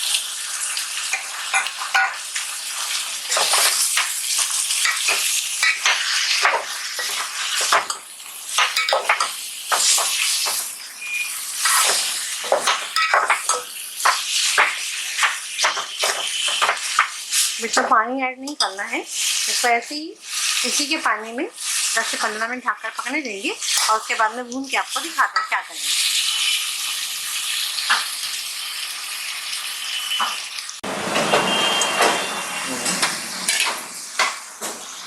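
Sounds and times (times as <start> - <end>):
food sizzling in a pot: 0.0 - 35.0
spoon scraping and clinking pan: 1.1 - 2.3, 3.3 - 10.6, 11.6 - 14.8.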